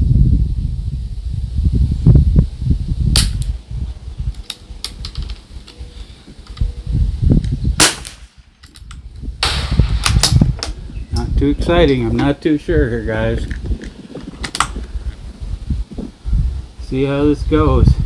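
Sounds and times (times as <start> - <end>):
low microphone rumble: 0.0 - 4.4, 8.9 - 18.0
rifle shots: 7.8 - 8.4.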